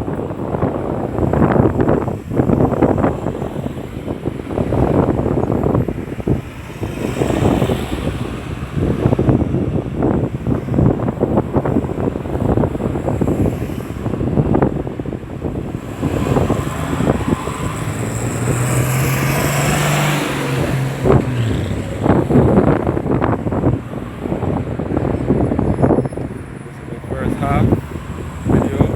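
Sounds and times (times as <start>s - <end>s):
road traffic: 0.0s - 28.9s
wind buffeting microphone: 0.0s - 28.9s
vehicle passing close: 15.4s - 28.9s.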